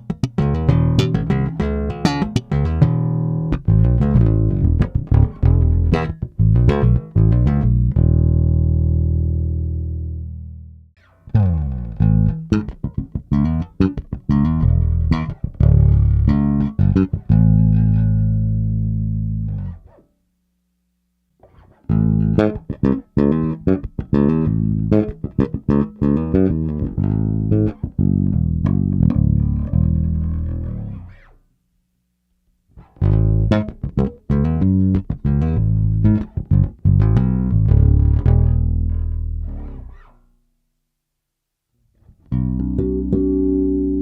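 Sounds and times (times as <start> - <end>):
electric bass played solo: 0.0 - 20.0, 21.4 - 31.4, 32.8 - 40.2, 42.0 - 44.0.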